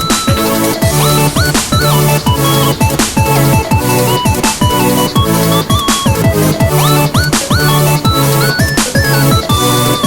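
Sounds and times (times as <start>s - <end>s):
electronic music with kick drums: 0.0s - 10.0s
sliding synth melody: 0.0s - 10.0s.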